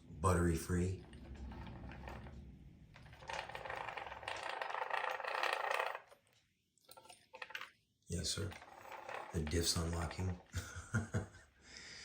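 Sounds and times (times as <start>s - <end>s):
gears rattling and whirring: 1.1s - 6.4s, 8.5s - 10.2s.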